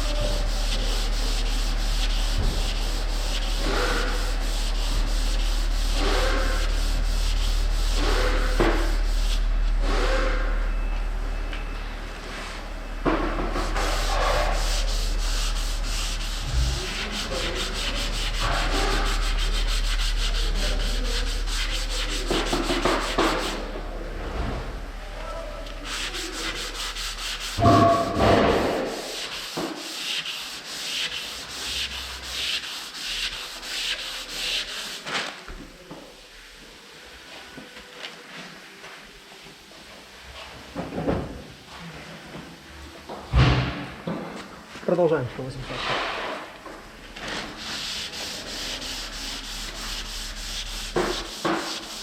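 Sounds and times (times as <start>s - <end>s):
sandpaper scraping car panel: 0.0s - 10.1s, 13.5s - 23.7s, 25.8s - 35.1s, 47.2s - 52.0s.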